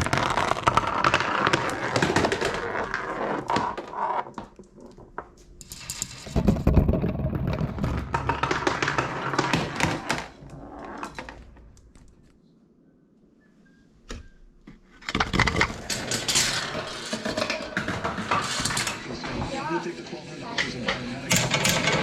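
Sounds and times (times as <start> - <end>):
marbles clattering down marble run: 15.1 - 19.0, 21.0 - 22.0.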